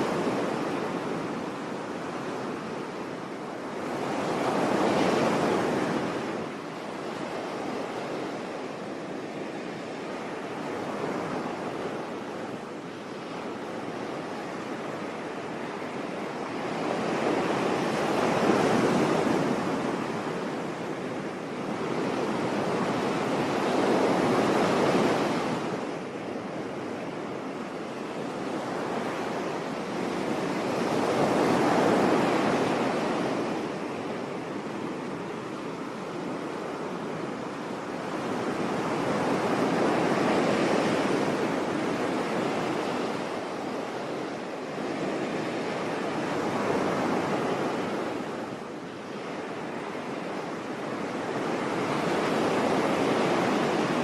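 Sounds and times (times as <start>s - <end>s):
waves washing onto beach: 0.0s - 54.0s.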